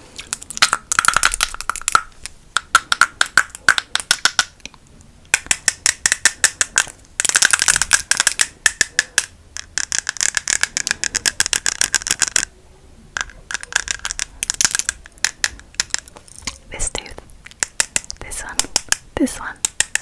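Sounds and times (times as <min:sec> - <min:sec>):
rapid tapping clicks: 0:05.3 - 0:12.5, 0:17.5 - 0:20.0.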